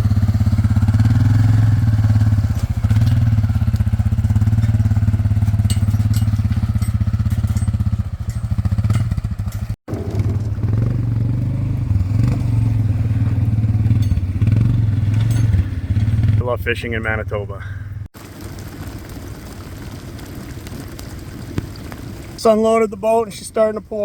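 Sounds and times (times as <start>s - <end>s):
engine running under load: 0.0s - 16.9s.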